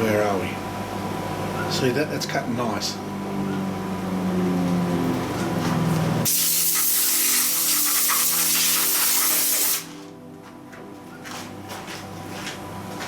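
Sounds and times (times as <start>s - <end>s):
loud spraying hiss: 6.3s - 10.0s.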